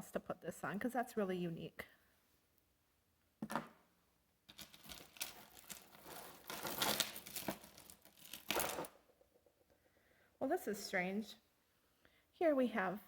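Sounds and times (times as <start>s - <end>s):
small metal pieces clinking: 4.5s - 8.9s
rustling: 4.5s - 9.0s.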